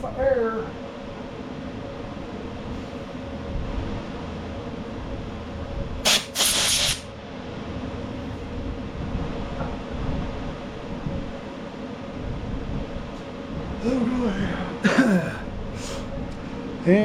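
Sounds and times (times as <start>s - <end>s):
air blow gun blasts: 6.0s - 7.1s.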